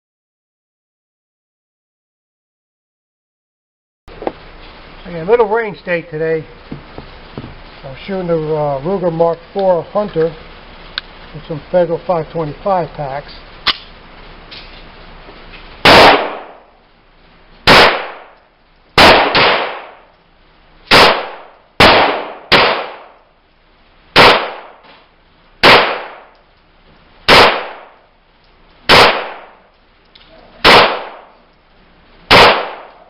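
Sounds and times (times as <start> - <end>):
pistol shots with echo: 15.8 - 16.6, 17.7 - 18.4, 19.0 - 20.1, 20.9 - 23.2, 24.2 - 24.8, 25.6 - 26.3, 27.3 - 28.0, 28.9 - 29.7, 30.6 - 31.4, 32.3 - 33.0.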